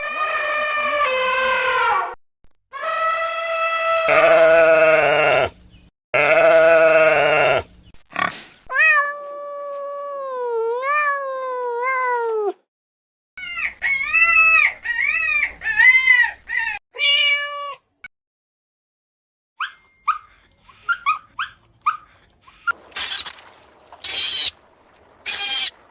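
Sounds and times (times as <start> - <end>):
drawn-out animal calls: 21.9 - 25.9.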